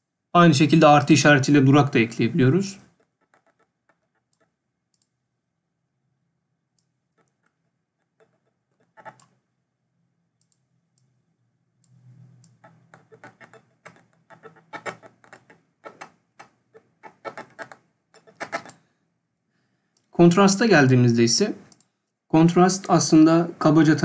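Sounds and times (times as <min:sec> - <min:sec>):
keyboard typing: 0:02.4 - 0:05.2, 0:06.8 - 0:09.4, 0:11.8 - 0:18.8.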